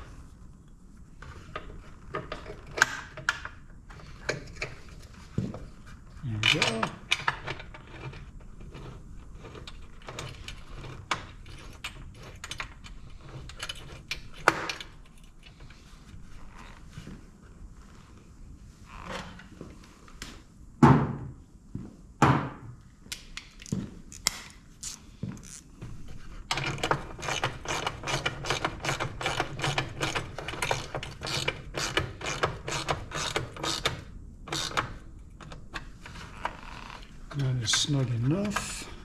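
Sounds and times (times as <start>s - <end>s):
ratchet wrench clicking: 24.2s - 25.6s.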